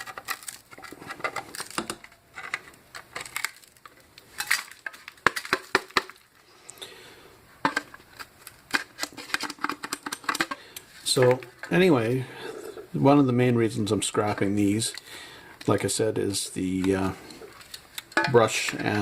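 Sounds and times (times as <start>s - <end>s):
resin cracking: 0.0s - 6.8s, 16.8s - 19.0s.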